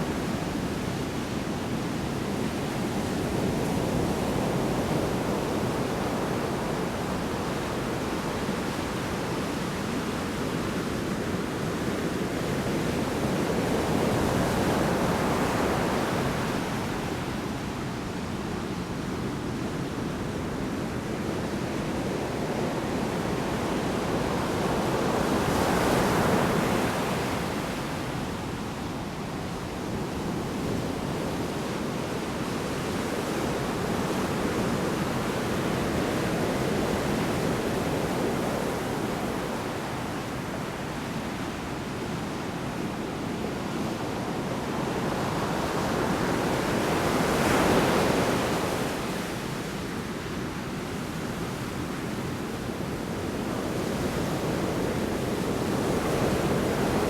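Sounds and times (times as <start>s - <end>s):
rushing surf wash: 22.1s - 57.0s
large waves breaking: 33.2s - 50.4s.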